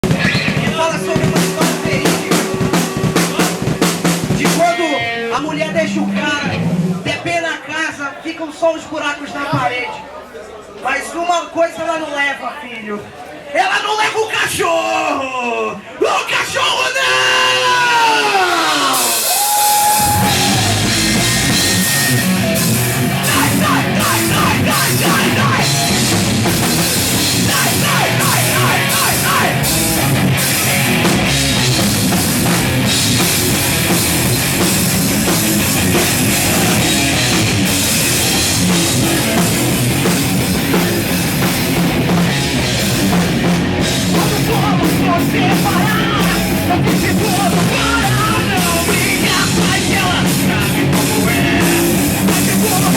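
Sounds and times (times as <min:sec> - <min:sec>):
drum kit beat: 0:00.0 - 0:07.1, 0:18.4 - 0:52.9
hard rock band playing: 0:00.0 - 0:07.2, 0:17.4 - 0:52.9.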